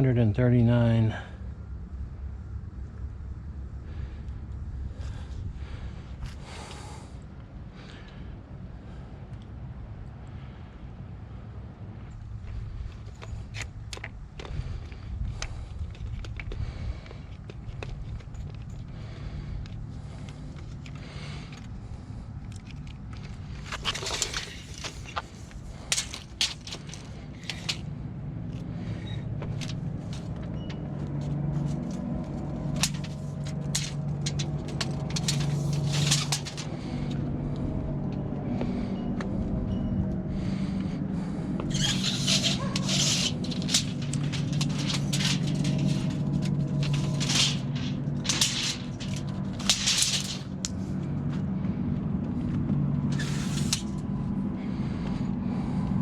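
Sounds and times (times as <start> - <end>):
engine drone: 0.1 - 56.0
short scrapes: 41.7 - 50.8, 53.1 - 54.0.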